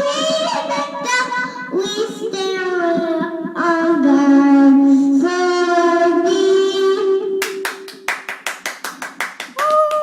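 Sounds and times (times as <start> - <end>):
hand clapping: 7.4 - 10.0.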